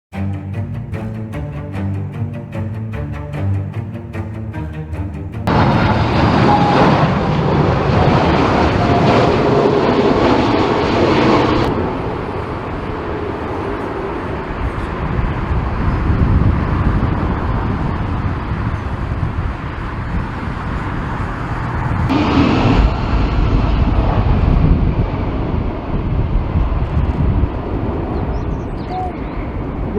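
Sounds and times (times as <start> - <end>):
jet engines rumbling: 4.1 - 16.7, 19.9 - 26.6.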